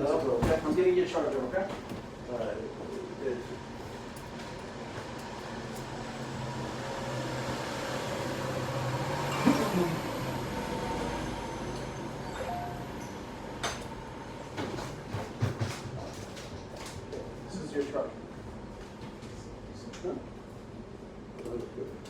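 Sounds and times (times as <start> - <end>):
heavy vehicle rumbling past: 6.0 - 13.6.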